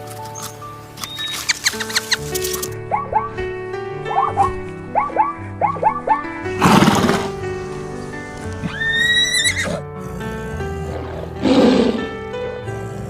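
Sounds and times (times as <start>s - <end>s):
background music: 0.0s - 13.0s
animal calls: 1.0s - 3.4s, 4.0s - 12.1s.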